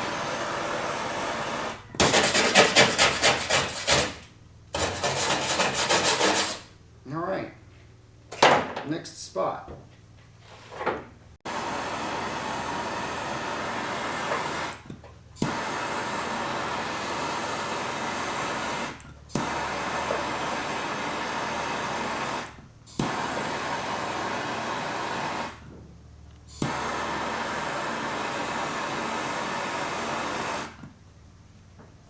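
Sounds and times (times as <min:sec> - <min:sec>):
blowing hiss of heating tool: 0:11.5 - 0:25.6, 0:26.5 - 0:30.8.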